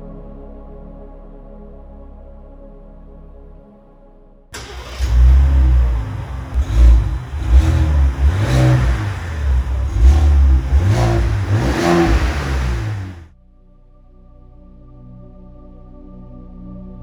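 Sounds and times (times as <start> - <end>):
faint ambient music: 0.0 - 4.5, 13.4 - 17.0
truck engine revving: 4.6 - 13.3.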